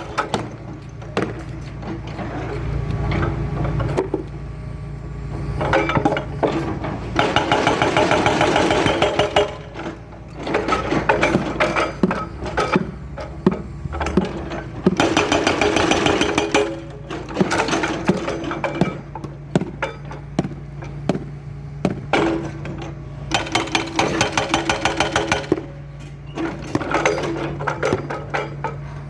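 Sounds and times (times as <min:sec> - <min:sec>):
excavator diesel engine running: 0:00.0 - 0:29.0
bucket breaking asphalt: 0:07.2 - 0:24.9
crunching and scraping: 0:08.9 - 0:24.3.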